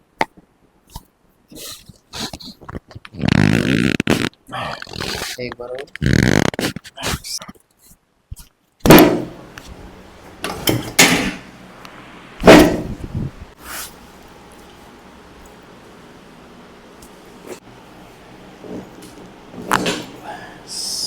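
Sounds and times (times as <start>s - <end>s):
room tone hiss: 8.0s - 21.0s.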